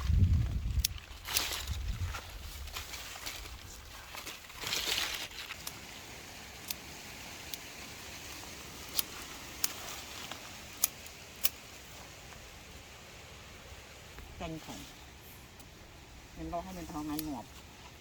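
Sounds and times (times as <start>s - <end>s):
rustle of leafy plants: 0.0s - 18.0s
plant stems snapping: 0.5s - 5.8s, 8.8s - 11.6s, 17.0s - 17.6s.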